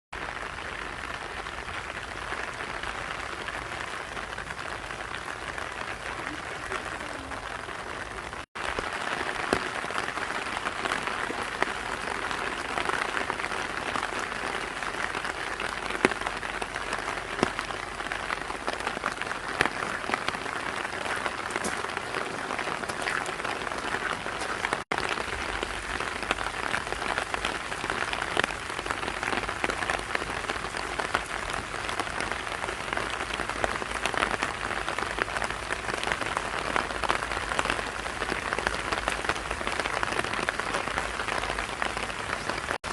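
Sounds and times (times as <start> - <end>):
rain falling: 0.2 - 42.9.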